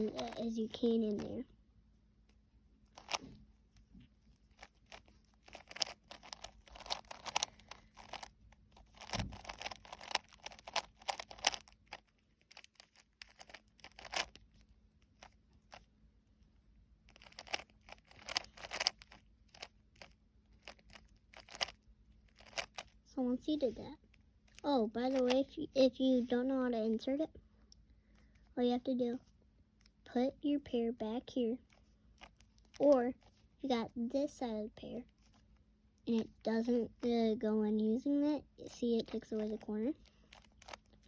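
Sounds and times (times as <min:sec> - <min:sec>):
puzzle cube plastic clicks: 0:00.0 - 0:01.2, 0:02.9 - 0:15.9, 0:17.1 - 0:23.0, 0:24.5 - 0:25.5, 0:31.7 - 0:33.4, 0:39.0 - 0:41.0.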